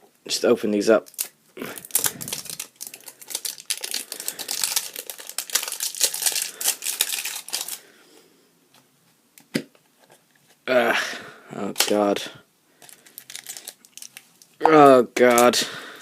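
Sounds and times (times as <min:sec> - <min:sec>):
plastic wrapper crinkling: 0:01.0 - 0:07.9, 0:12.8 - 0:14.6.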